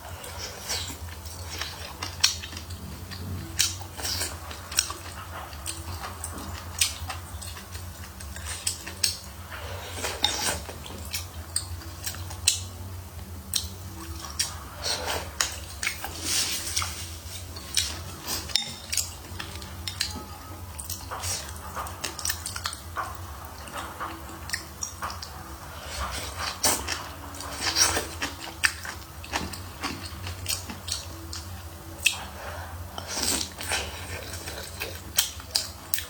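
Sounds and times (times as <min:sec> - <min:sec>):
chewing and biting food: 0:20.8 - 0:36.0.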